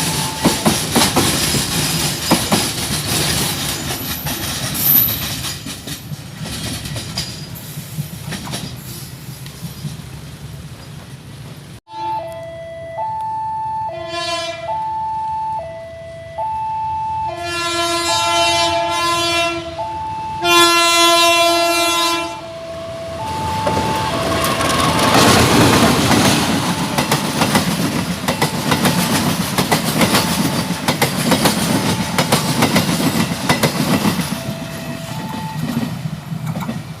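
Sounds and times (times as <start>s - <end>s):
two-tone warning signal: 0.0s - 0.9s, 11.9s - 25.3s, 31.5s - 32.7s, 34.2s - 35.8s
train wheels clattering over rail joints: 0.0s - 11.7s, 23.7s - 34.6s, 35.3s - 37.0s
locomotive horn blasts: 11.9s - 25.5s, 34.3s - 35.7s.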